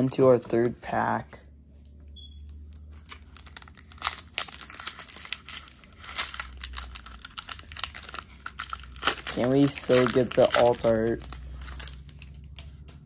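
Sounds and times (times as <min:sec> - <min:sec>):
foil wrapper crinkling: 0:02.7 - 0:13.0.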